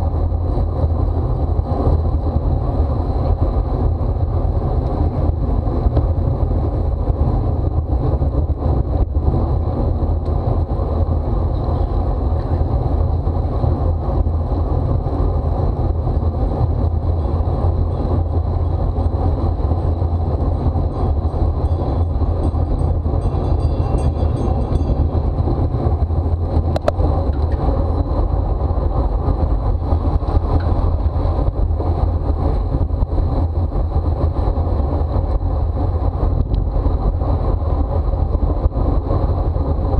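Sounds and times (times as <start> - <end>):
wind and road noise: 0.0 - 39.9.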